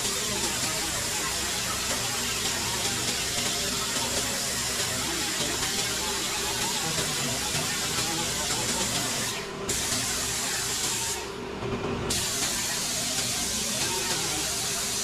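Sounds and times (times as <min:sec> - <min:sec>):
air tool hissing: 0:01.9 - 0:11.3, 0:12.1 - 0:15.0.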